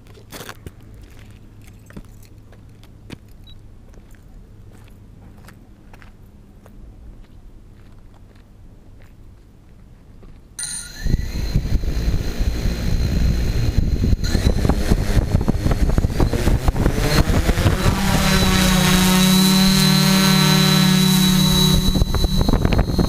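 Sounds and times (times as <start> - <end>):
drone motors buzzing: 10.6 - 23.0
high electronic whine: 10.6 - 23.0.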